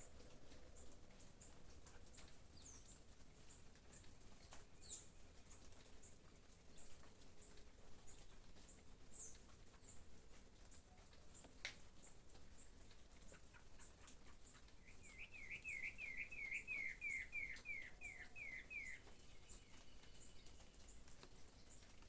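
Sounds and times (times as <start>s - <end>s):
songbird singing: 0.0s - 10.1s, 11.0s - 22.0s
rain patter: 0.0s - 22.0s
faint high chirp: 14.8s - 20.7s.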